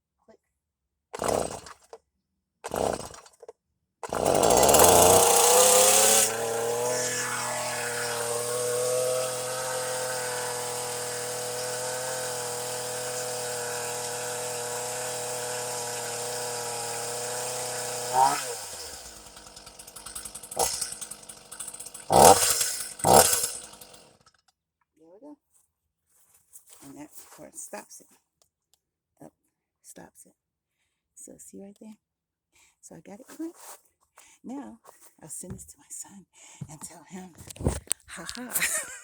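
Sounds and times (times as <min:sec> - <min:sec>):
chainsaw engine running: 0:01.2 - 0:01.9, 0:02.6 - 0:03.3, 0:04.0 - 0:24.3, 0:37.5 - 0:39.0
starter cord pulls: 0:02.7 - 0:24.3, 0:37.4 - 0:38.7.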